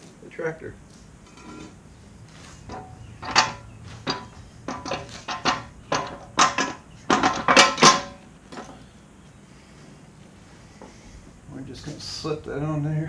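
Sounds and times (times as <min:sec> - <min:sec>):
steel parts clanking: 0:00.9 - 0:08.9.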